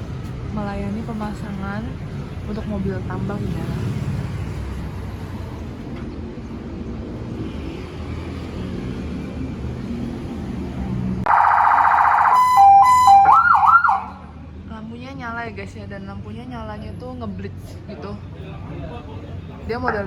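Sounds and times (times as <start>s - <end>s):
electronic vehicle siren: 11.3s - 14.3s.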